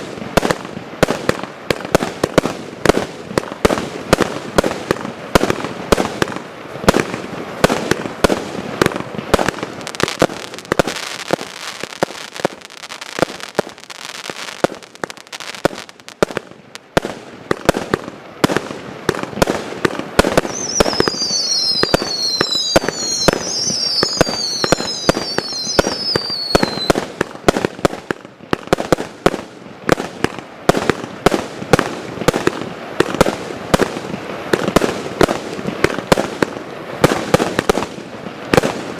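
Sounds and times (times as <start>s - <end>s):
fireworks bangs and crackle: 0.0s - 38.9s
falling firework whistles: 20.2s - 27.1s.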